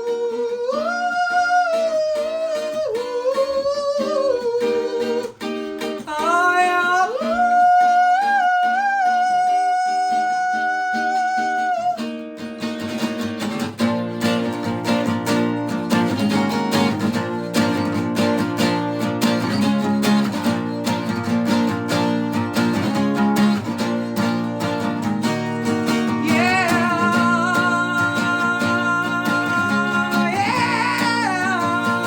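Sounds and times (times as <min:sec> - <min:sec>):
person humming a slow melody: 0:00.0 - 0:05.3
strummed string instrument: 0:12.1 - 0:32.0.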